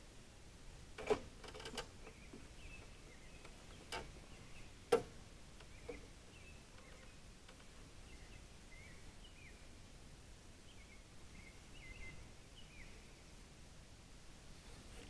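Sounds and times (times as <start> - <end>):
low steady background noise: 0.0 - 15.0
faint bird chirps: 5.6 - 7.2, 10.6 - 13.3.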